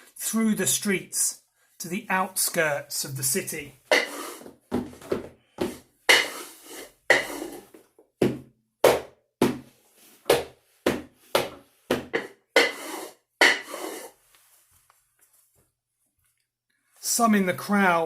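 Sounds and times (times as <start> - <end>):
wooden knocks and thuds: 4.4 - 6.2, 10.3 - 12.4.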